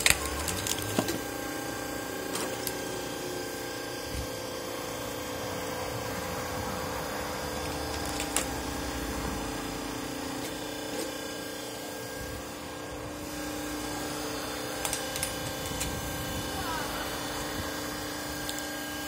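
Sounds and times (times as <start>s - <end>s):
wood cracking: 0.0s - 1.3s
log splitter motor humming: 0.0s - 19.0s.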